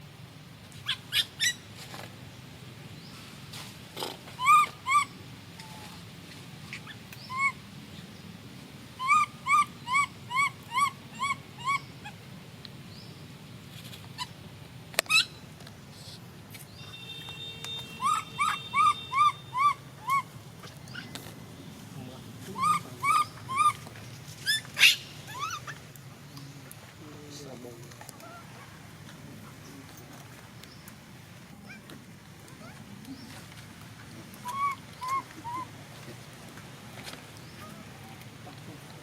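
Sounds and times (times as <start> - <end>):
monkey calling: 0.8 - 1.6, 4.3 - 6.0, 6.7 - 7.6, 9.0 - 12.2, 15.1 - 15.4, 17.8 - 21.2, 22.4 - 25.9, 28.1 - 28.8, 31.6 - 31.9, 34.4 - 35.7.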